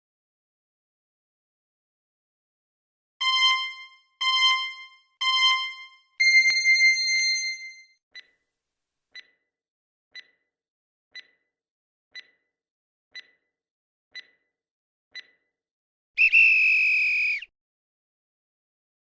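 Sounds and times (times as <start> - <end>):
long electronic beep: 3.2 - 7.9
countdown timer ticks: 3.2 - 8.3, 9.2 - 9.4, 10.1 - 10.4, 11.1 - 11.5, 12.1 - 12.5, 13.1 - 13.4, 14.1 - 14.5, 15.1 - 15.4.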